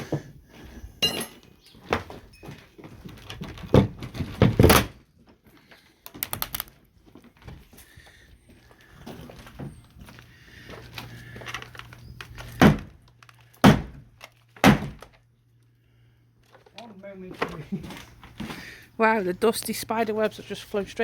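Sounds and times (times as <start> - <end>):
timber boards knocking and thudding: 3.4 - 5.0, 12.6 - 13.0, 13.6 - 15.2.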